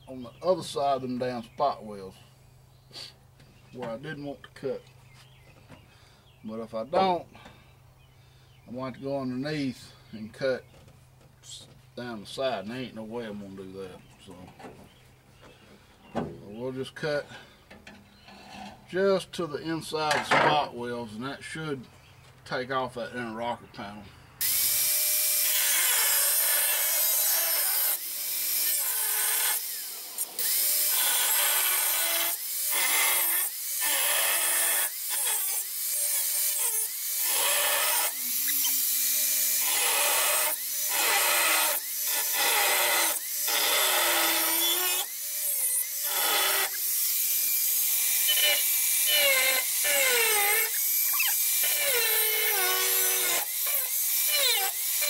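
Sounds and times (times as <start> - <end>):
cut-off wheel cutting sheet metal: 24.4 - 55.0.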